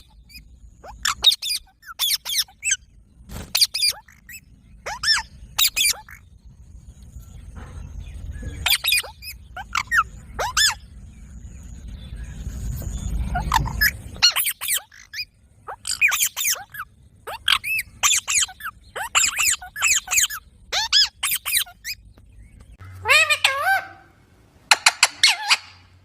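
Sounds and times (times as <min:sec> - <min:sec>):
parrot squawking: 0:00.0 - 0:02.8, 0:03.5 - 0:06.2, 0:08.6 - 0:10.9, 0:13.2 - 0:22.0, 0:22.8 - 0:26.0
low rumble: 0:00.0 - 0:24.7.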